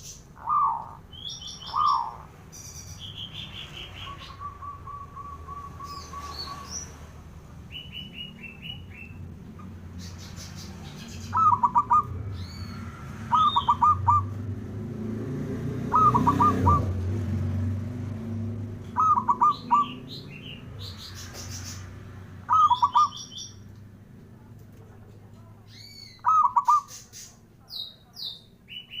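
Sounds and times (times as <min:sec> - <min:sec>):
small birds chirping: 0:00.0 - 0:29.0
dove cooing: 0:00.4 - 0:02.3, 0:10.8 - 0:12.2, 0:13.3 - 0:14.4, 0:15.9 - 0:17.0, 0:18.9 - 0:20.1, 0:22.5 - 0:23.3, 0:26.2 - 0:26.9.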